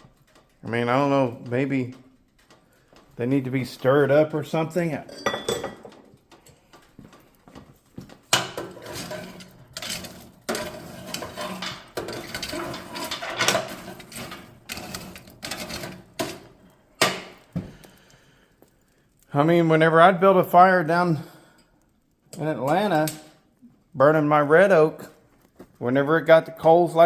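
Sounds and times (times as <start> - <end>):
coal rattling against metal: 0.0 - 18.5.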